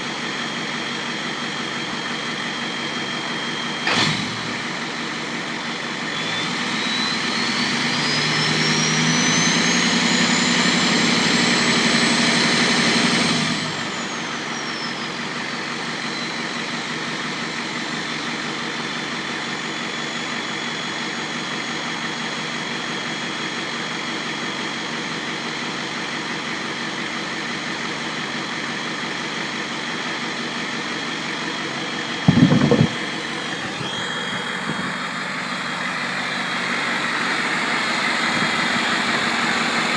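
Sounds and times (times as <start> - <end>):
diesel engine revving and idling: 0.0 - 39.9
turbo whistle: 6.1 - 10.6.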